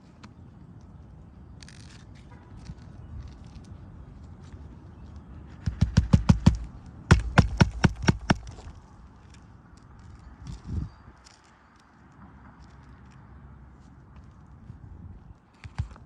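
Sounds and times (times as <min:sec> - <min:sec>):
hammer driving roofing nails: 0:05.6 - 0:08.7.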